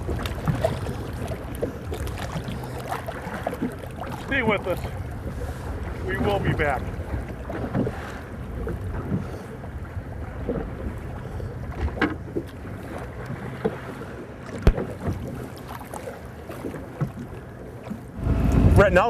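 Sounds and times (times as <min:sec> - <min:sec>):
boat engine rumble: 0:00.0 - 0:19.0
wind on microphone: 0:18.1 - 0:19.0.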